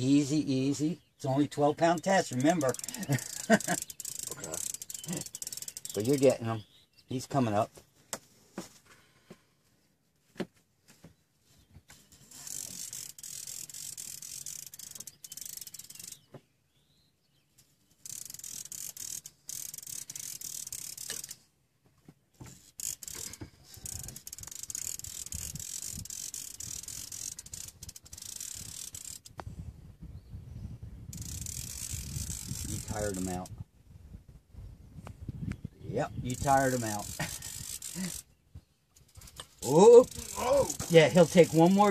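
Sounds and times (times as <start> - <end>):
fishing reel ratcheting: 1.8 - 6.4, 12.0 - 16.3, 18.0 - 21.4, 22.5 - 29.4, 31.1 - 33.5, 36.3 - 38.3, 39.0 - 41.9.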